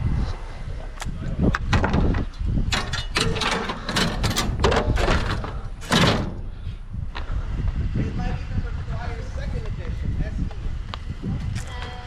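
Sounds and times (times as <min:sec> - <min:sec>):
low wind-like rumble: 0:00.0 - 0:12.0
hard objects clattering: 0:01.6 - 0:06.6.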